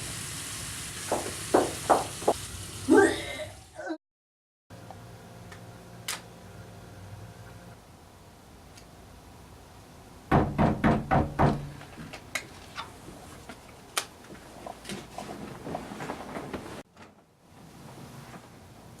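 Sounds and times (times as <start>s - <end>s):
loud knocks: 1.1s - 2.4s, 10.3s - 11.8s.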